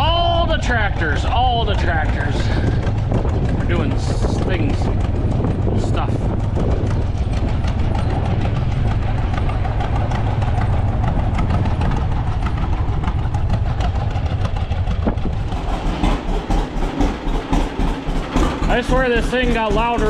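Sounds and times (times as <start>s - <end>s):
machinery rattling: 0.0s - 20.0s
tractor engine droning: 0.0s - 20.0s.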